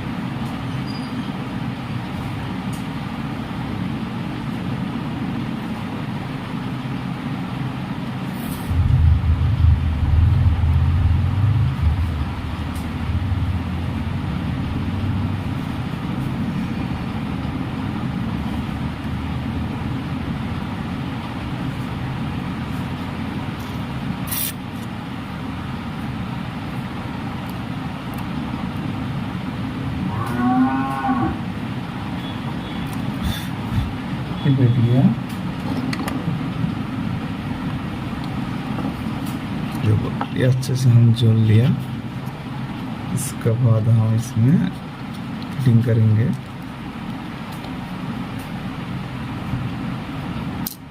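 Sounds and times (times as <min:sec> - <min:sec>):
steady low rumble: 0:07.9 - 0:30.1
cow mooing: 0:30.0 - 0:31.5.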